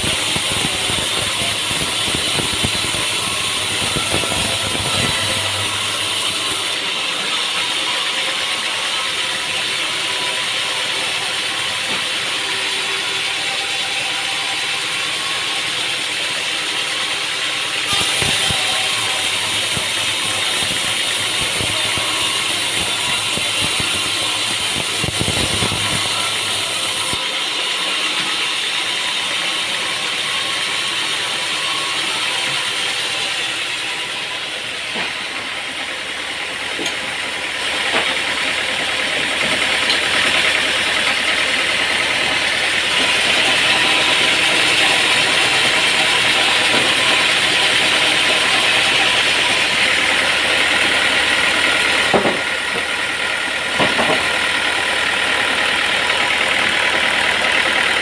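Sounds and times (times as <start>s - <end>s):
sawmill machinery clattering: 0.0s - 58.0s.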